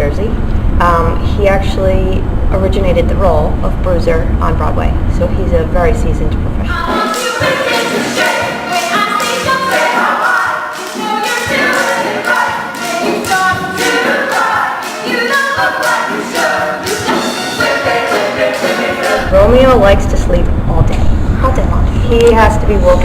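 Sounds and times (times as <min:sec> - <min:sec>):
chorus singing: 0:06.6 - 0:19.6
band with percussion: 0:06.8 - 0:19.3.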